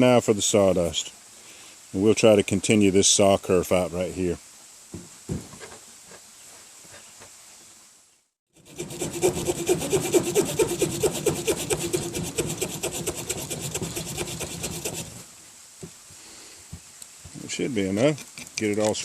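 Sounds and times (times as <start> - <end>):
small saw sawing wood: 8.6 - 15.3.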